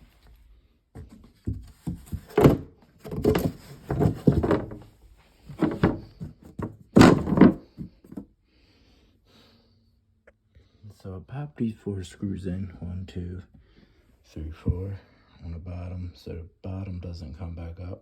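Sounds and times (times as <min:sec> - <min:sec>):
wooden panels knocking and thudding: 0:01.0 - 0:04.9, 0:05.5 - 0:08.2.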